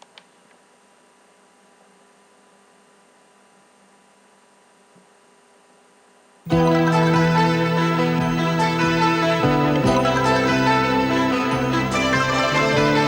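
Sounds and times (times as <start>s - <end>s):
faint electrical hum with hiss: 0.0s - 6.6s.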